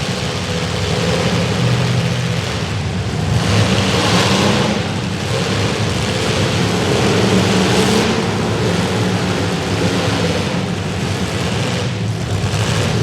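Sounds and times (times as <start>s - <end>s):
car engines revving: 0.0s - 13.0s.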